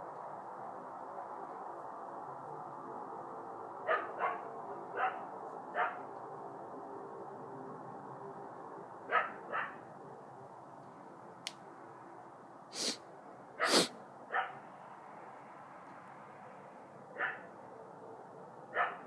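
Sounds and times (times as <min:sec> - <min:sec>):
noisy hissing bursts: 0:12.7 - 0:13.0, 0:13.6 - 0:14.0.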